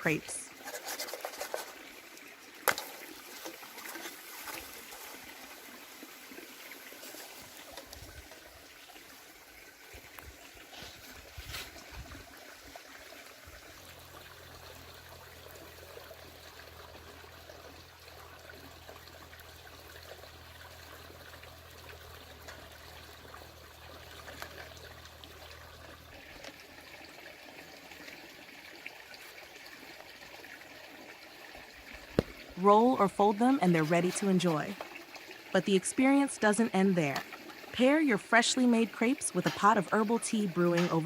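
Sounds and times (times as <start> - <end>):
faint water trickling: 0.0 - 41.0.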